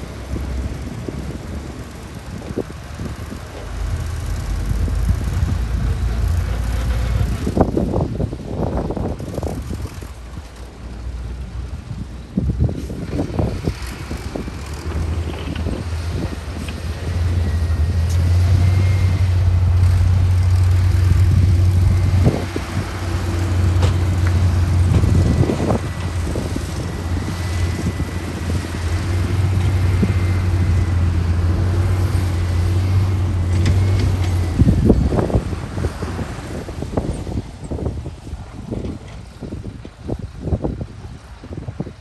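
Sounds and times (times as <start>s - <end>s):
bulldozer diesel engine running: 0.0s - 40.4s
high whine: 2.2s - 35.4s.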